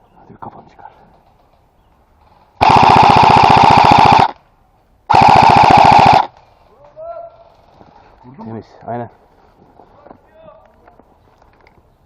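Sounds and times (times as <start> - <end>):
airsoft rifle full-auto bursts: 2.6 - 4.4, 5.1 - 6.3.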